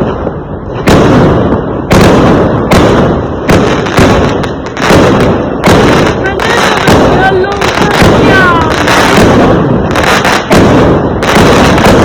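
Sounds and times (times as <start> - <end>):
fireworks exploding: 0.0 - 12.0
rumbling echo: 0.0 - 12.0.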